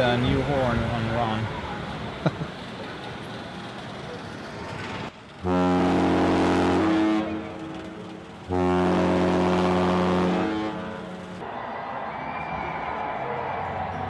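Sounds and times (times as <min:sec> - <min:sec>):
low boat horn blasts: 0:05.4 - 0:11.3.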